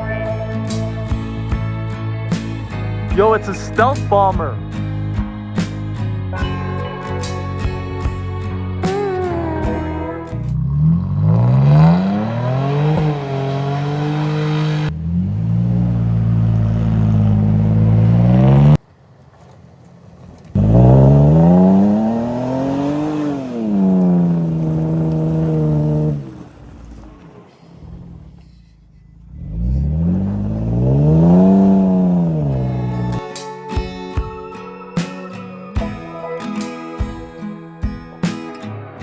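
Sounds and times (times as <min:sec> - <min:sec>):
vehicle engine accelerating: 0:00.0 - 0:18.8, 0:20.5 - 0:28.5, 0:29.1 - 0:33.2.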